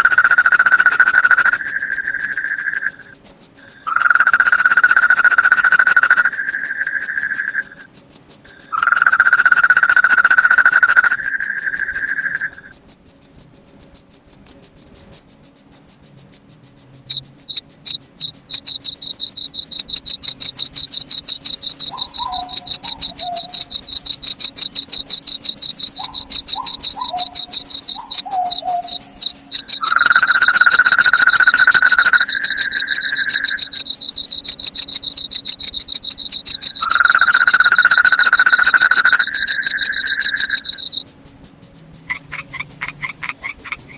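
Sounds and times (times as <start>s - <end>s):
crickets trilling: 0.0s - 43.9s
bird chirping: 16.9s - 41.1s
loud insect drone: 17.4s - 42.0s.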